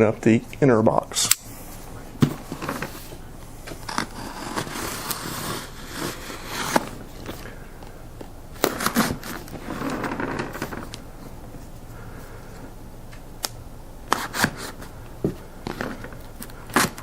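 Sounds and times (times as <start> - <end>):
cardboard packaging handled: 2.2 - 11.1, 14.1 - 17.0.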